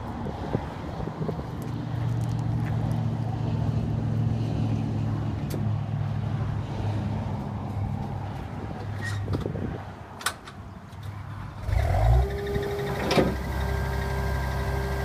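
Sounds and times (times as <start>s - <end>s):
diesel engine running: 11.6s - 15.0s.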